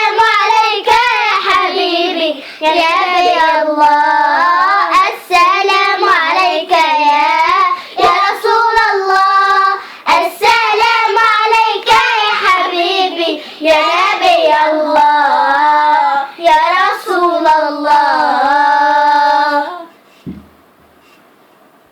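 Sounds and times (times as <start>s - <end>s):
girls singing: 0.0s - 20.0s
low thump: 20.2s - 21.0s.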